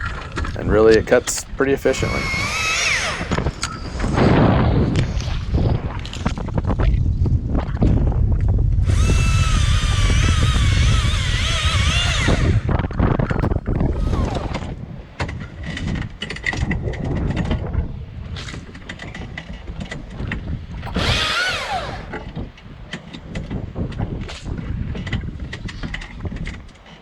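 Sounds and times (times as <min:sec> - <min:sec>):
electric chainsaw whining: 0:01.7 - 0:04.2, 0:08.8 - 0:14.9, 0:20.8 - 0:22.5.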